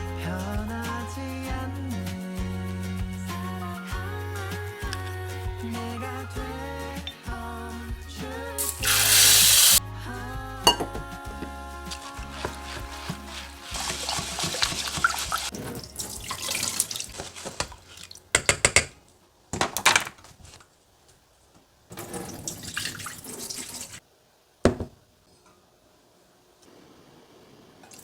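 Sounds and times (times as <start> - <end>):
tap water running into sink: 8.8 - 9.8, 12.3 - 18.6, 22.0 - 24.0.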